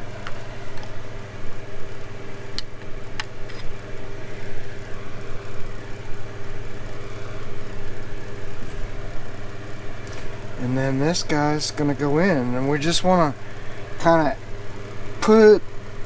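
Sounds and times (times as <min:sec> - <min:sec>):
steady mechanical hum: 0:00.0 - 0:16.0.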